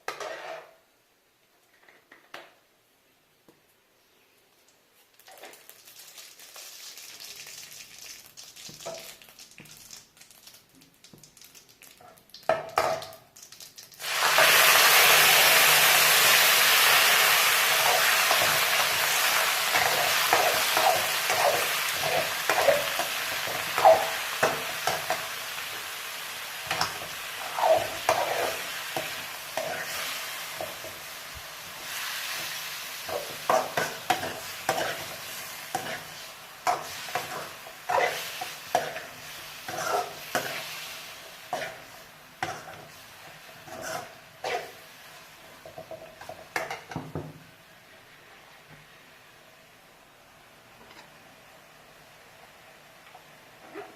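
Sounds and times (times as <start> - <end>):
spoon stirring and scraping pan: 0.0 - 0.8, 17.8 - 25.9, 26.6 - 31.2, 31.8 - 44.9, 45.5 - 47.1
food sizzling in hot oil: 5.1 - 47.7.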